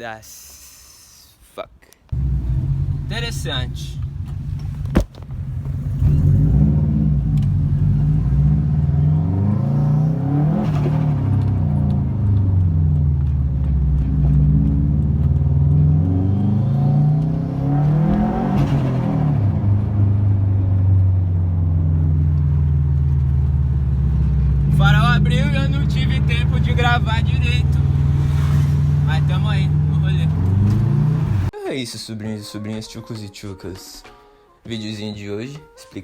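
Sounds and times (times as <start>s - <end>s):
car engine revving: 2.2s - 31.5s.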